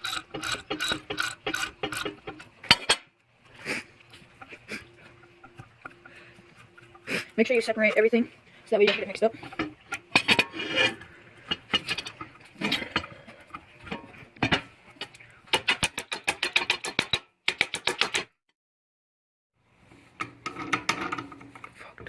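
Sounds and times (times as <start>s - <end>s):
rapid ratchet clicks: 0.0s - 2.2s
handling scooter parts and tools: 0.0s - 3.2s, 8.7s - 17.2s.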